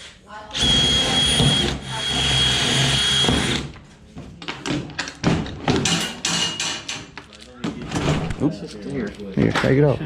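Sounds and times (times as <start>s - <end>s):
power drill whine: 0.6s - 3.6s.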